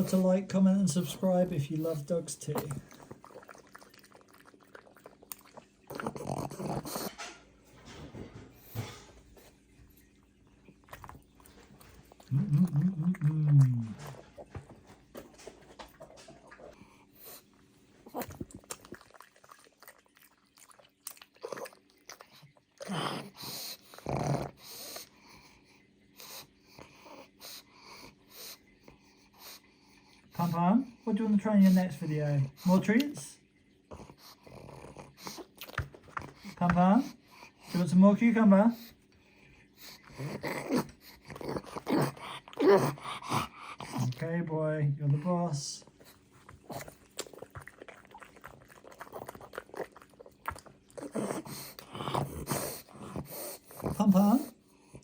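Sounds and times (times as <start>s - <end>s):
dog snorting: 0.0s - 9.6s, 21.4s - 25.6s, 33.9s - 44.2s, 45.8s - 55.0s
dog sniffing: 51.0s - 54.5s.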